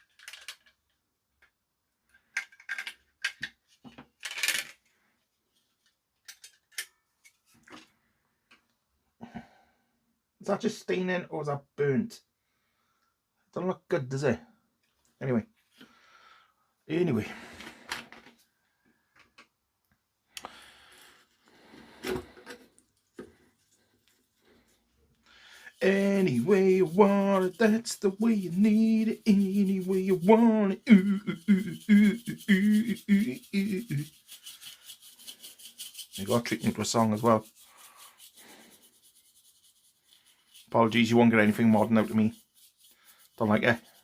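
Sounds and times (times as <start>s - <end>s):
batteries rattling: 0.0s - 0.8s, 4.2s - 4.8s
plastic parts clicking on bench: 0.0s - 0.8s, 2.3s - 3.6s
plastic and metal clicks and clatters: 0.0s - 1.0s, 2.1s - 4.9s, 6.2s - 7.9s
soft rubbing on circuit board: 31.6s - 44.0s.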